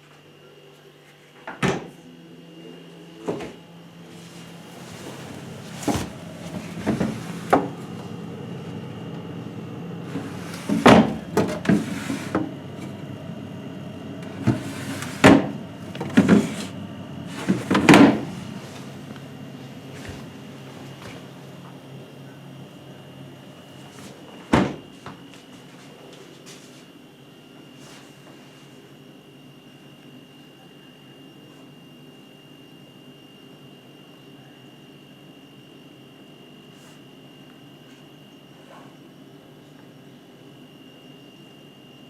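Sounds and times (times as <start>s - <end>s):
fridge hum: 0.0s - 42.0s
fridge doors and drawers knocking: 5.4s - 7.8s, 10.2s - 12.6s, 14.2s - 16.7s, 17.4s - 18.4s.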